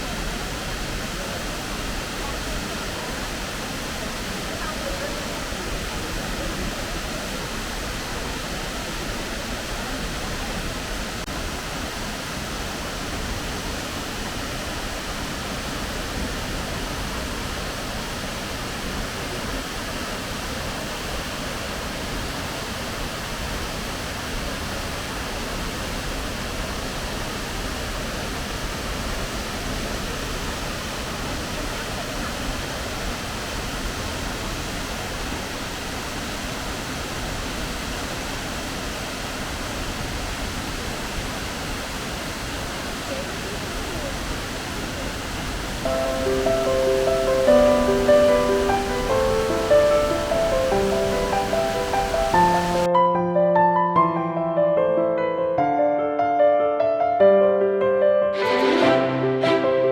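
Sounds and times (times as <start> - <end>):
waterfall roar: 0.0 - 52.9.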